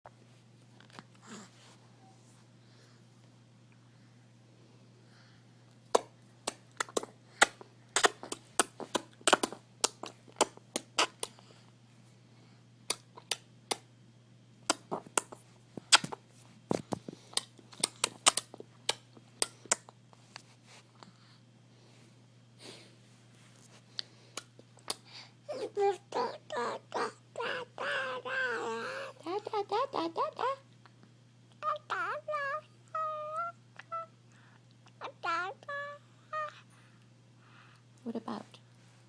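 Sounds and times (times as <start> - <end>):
faint steady hum: 0.1 - 39.0
baby clicking mouth: 5.9 - 11.4, 12.9 - 13.8, 17.3 - 19.9.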